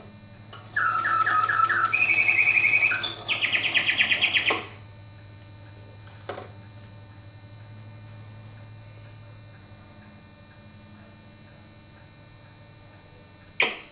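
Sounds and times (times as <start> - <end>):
clockwork mechanism humming: 0.2 - 4.9.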